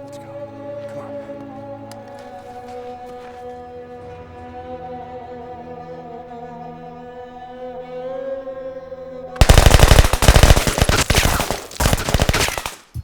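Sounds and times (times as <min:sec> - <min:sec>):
sustained film music: 0:00.0 - 0:13.0
automatic gunfire: 0:09.4 - 0:13.0.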